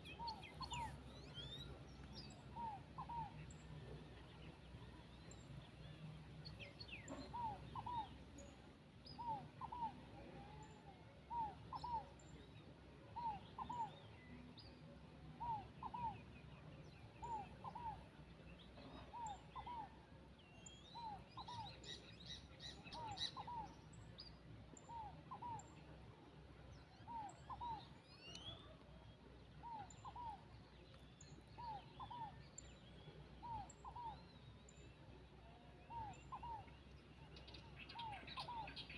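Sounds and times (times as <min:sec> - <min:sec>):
birds chirping faintly: 0:00.0 - 0:09.9.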